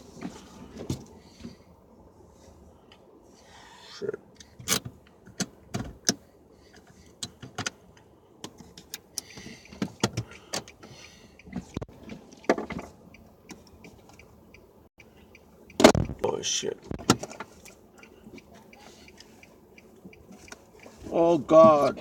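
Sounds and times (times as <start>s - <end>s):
clicks and knocks inside a car: 4.9s - 14.3s, 15.7s - 18.8s, 20.0s - 22.0s.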